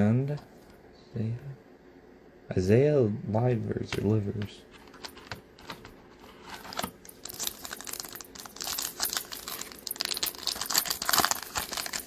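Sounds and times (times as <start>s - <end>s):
card pack wrapper crinkling: 6.4s - 12.0s.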